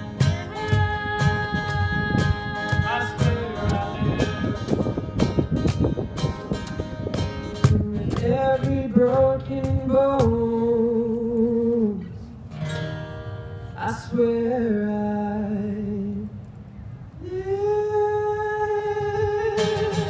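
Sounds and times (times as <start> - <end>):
singers holding wordless notes: 0.0 - 5.2
acoustic guitar: 0.0 - 20.0.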